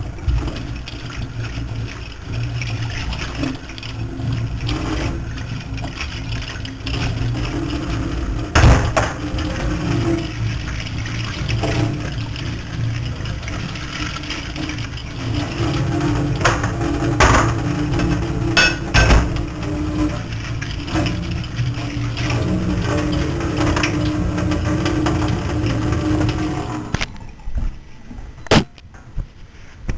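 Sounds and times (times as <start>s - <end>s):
machine hum: 0.0s - 29.0s
kitchenware knocking and clinking: 18.6s - 19.3s.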